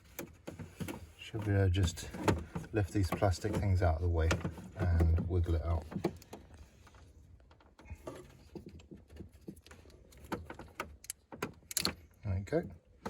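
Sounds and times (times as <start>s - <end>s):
plastic clicks and knocks: 0.0s - 6.7s.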